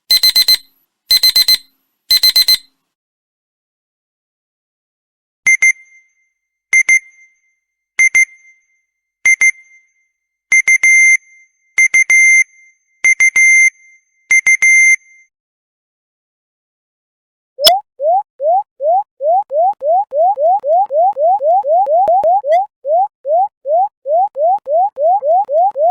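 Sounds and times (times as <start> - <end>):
electronic double beeps ringtone: 0.1 - 2.7, 17.6 - 25.9.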